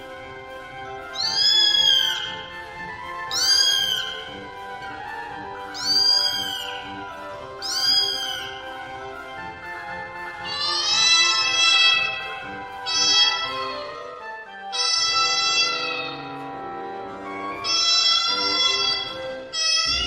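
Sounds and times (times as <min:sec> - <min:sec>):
soft background music: 0:00.0 - 0:20.0
cat meowing: 0:01.2 - 0:02.4, 0:03.3 - 0:04.2, 0:05.7 - 0:07.0, 0:07.6 - 0:08.6, 0:10.5 - 0:13.8, 0:14.7 - 0:16.3, 0:17.6 - 0:20.0.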